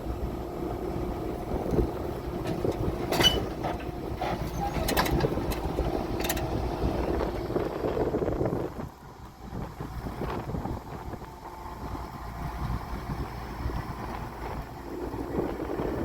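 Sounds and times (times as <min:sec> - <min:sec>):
tractor engine running: 0:00.0 - 0:16.0
sharp rattles and clanks: 0:01.7 - 0:07.5.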